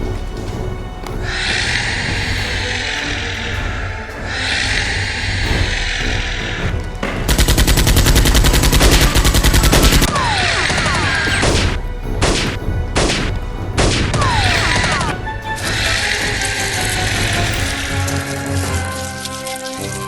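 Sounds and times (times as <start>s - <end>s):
background music: 0.0s - 20.0s
machine-gun burst: 7.3s - 10.8s.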